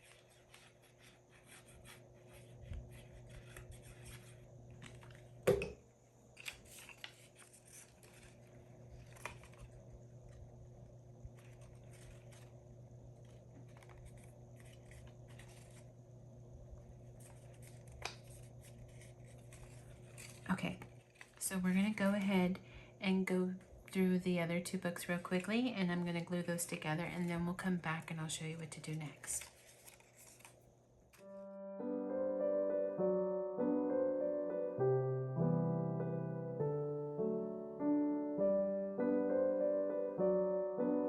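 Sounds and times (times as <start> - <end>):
paper pages rustling: 0.0 - 5.4, 6.4 - 10.5, 11.2 - 15.9, 17.0 - 22.3, 24.7 - 31.3.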